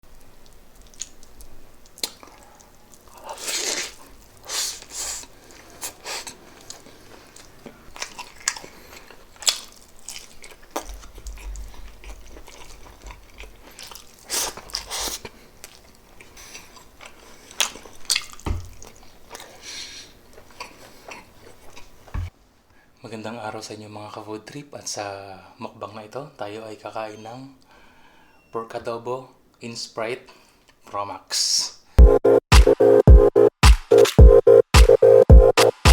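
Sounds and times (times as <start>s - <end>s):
chewing and biting food: 0.4s - 22.1s
wet mouth clicks and smacks: 0.8s - 3.1s.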